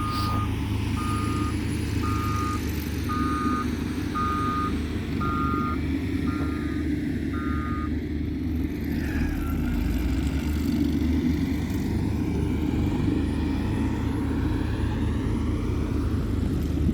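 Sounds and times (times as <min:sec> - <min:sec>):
reversing alarm beeping: 0:00.0 - 0:08.0
heavy vehicle engine running: 0:00.0 - 0:16.9.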